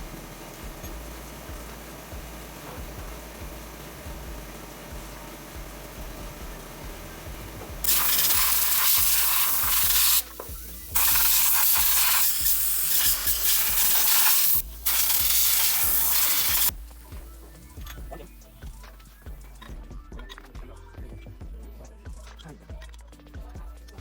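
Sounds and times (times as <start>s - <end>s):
loud hissing of air jet: 7.8s - 16.7s.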